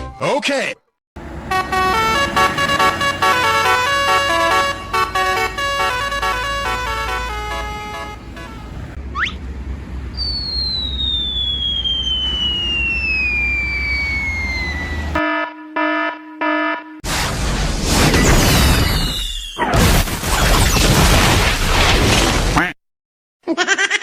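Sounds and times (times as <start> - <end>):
falling whistle: 9.2 - 9.4, 10.1 - 15.2, 18.5 - 19.6
rising whistle: 9.2 - 9.4, 10.1 - 15.2
short horn-like beeps: 14.6 - 17.0
explosion-like burst: 17.0 - 22.6.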